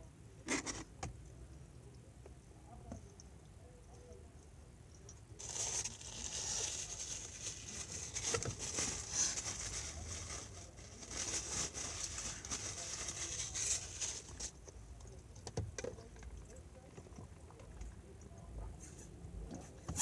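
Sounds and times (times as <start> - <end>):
chewing and crinkling: 5.0 - 20.0.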